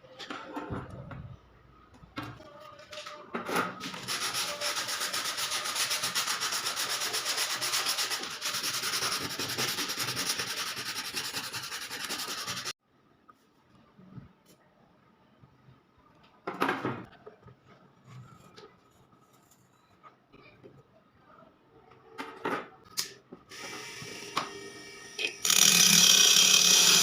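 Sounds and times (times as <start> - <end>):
rasping sanding on steel: 3.9 - 12.8.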